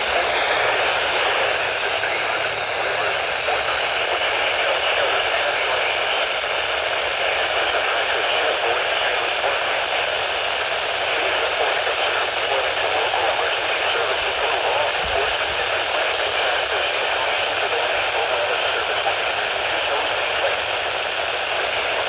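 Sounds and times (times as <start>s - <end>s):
radio static hiss: 0.0s - 22.0s.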